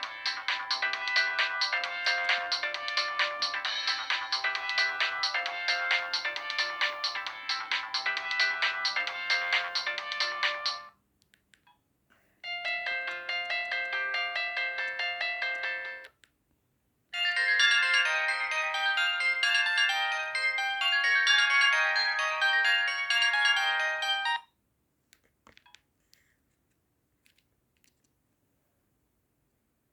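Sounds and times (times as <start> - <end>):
mobile phone ringtone melody: 0.0 - 10.9, 12.4 - 16.1, 17.2 - 24.5.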